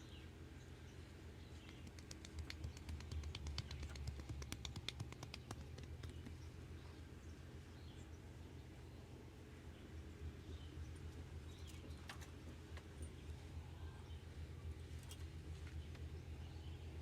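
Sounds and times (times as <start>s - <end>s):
low steady hum: 0.0s - 17.0s
hands clicking and tapping: 1.6s - 6.4s.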